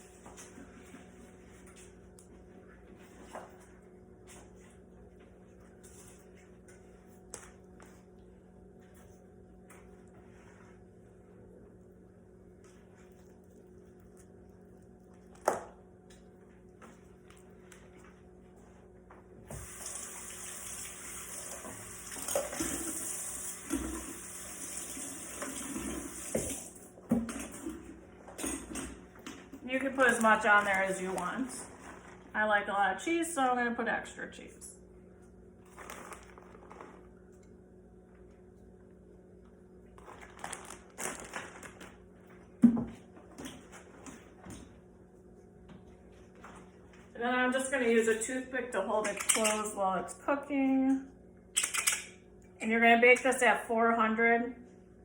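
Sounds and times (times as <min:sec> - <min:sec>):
kitchen tap running: 0:19.5 - 0:26.8
rustles and crackles: 0:35.6 - 0:37.2.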